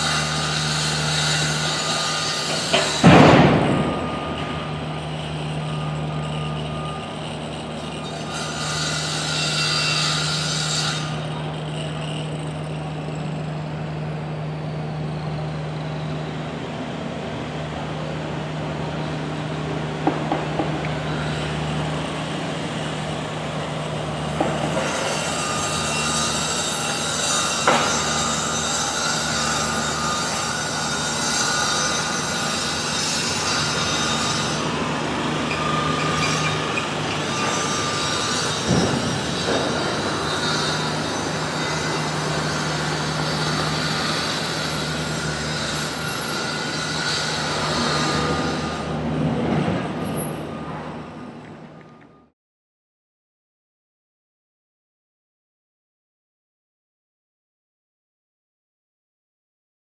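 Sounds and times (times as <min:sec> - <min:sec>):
mechanical drone: 0:00.0 - 0:52.2
sharp knocks and clanks: 0:02.4 - 0:04.6, 0:20.0 - 0:21.0, 0:24.4 - 0:25.0, 0:38.4 - 0:41.0.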